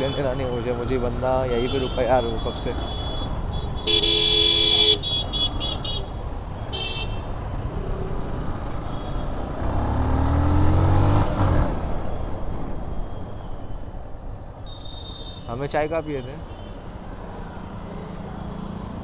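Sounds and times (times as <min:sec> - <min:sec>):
vehicle horns honking: 0:00.0 - 0:00.7, 0:01.4 - 0:07.3, 0:14.6 - 0:17.0
road and wind noise: 0:00.0 - 0:19.0.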